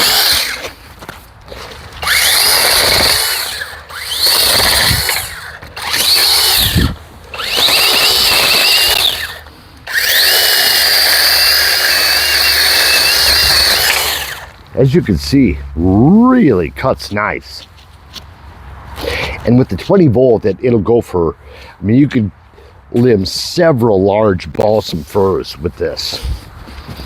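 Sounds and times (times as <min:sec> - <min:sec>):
electric chainsaw motor whining: 0:00.0 - 0:00.8, 0:01.9 - 0:14.6.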